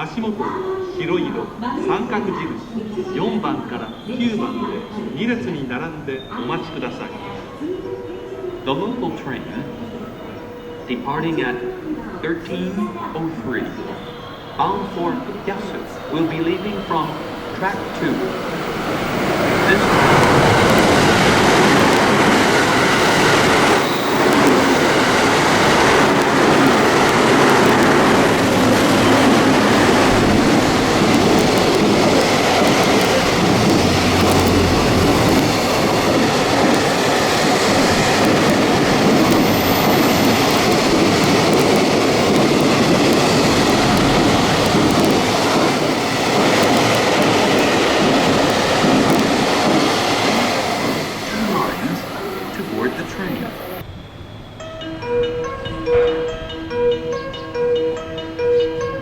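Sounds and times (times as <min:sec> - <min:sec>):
train passing at speed: 0:00.0 - 0:59.0
rail clatter: 0:13.6 - 0:53.9.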